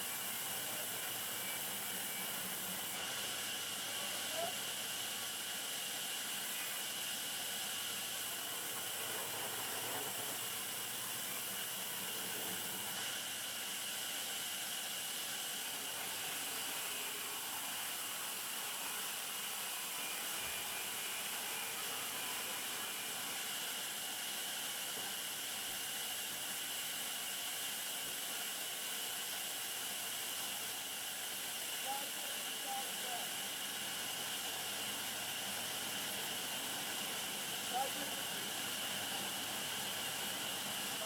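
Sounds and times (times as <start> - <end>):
sawmill machinery hiss: 0.0 - 41.0.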